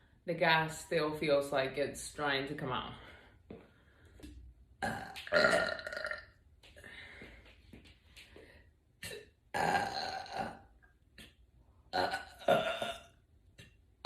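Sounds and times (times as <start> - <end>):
woman belching: 4.8 - 6.3, 9.0 - 10.7, 11.9 - 13.2.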